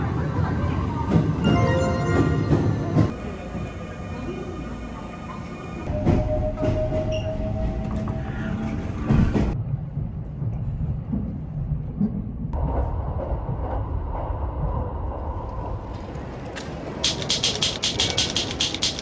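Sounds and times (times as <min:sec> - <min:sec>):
train rumbling: 0:05.9 - 0:19.0.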